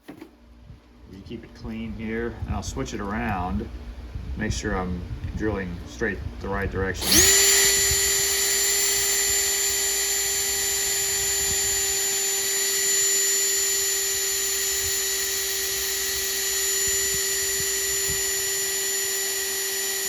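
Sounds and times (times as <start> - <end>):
electric drill whining: 7.0 - 20.0.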